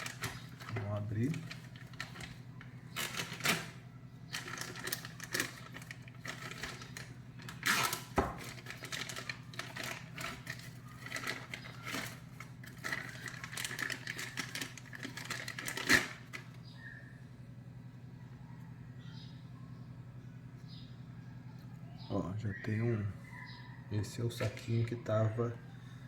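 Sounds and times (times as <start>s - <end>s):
plastic bag crinkling: 0.0s - 16.6s.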